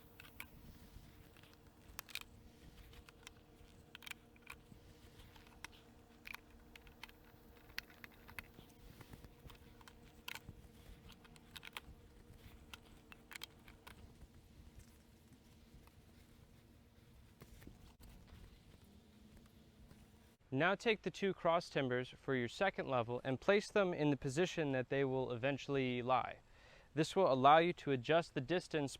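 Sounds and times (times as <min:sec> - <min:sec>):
low steady hum: 0:00.0 - 0:20.4.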